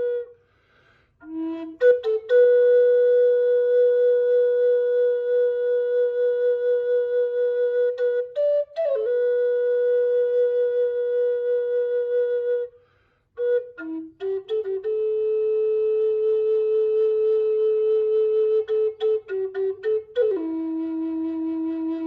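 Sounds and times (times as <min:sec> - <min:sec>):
flute playing slow melody: 0:00.0 - 0:00.5, 0:01.2 - 0:22.0.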